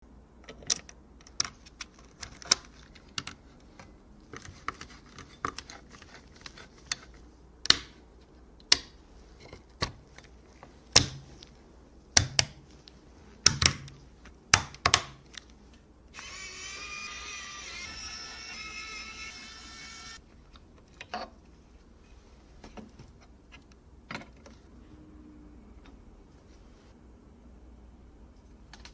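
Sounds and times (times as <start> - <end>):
electric screwdriver whine: 16.2 - 20.2.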